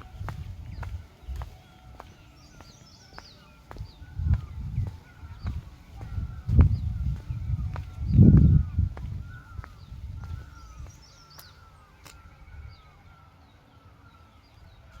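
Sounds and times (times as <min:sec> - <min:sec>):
wind rumble on microphone: 0:00.0 - 0:01.6, 0:03.8 - 0:13.1
birds chirping: 0:00.0 - 0:15.0.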